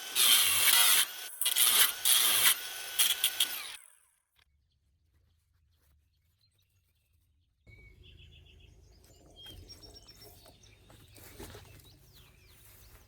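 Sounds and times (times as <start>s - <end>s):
small birds chirping: 4.5s - 13.0s.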